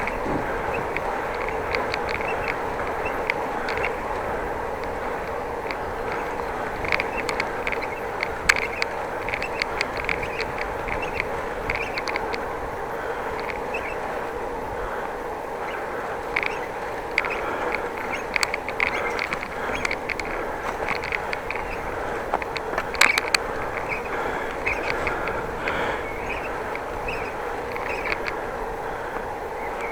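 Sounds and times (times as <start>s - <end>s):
high bicycle squeaks: 0.0s - 12.6s, 15.6s - 29.9s
bicycle tyre noise: 0.0s - 29.9s
wind noise: 0.0s - 29.9s.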